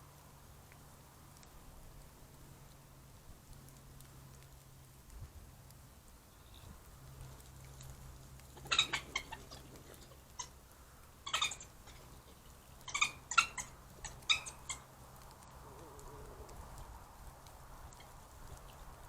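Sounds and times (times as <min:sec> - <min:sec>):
badgers high-pitched calls: 0:08.5 - 0:10.6, 0:11.2 - 0:16.8, 0:17.8 - 0:18.8.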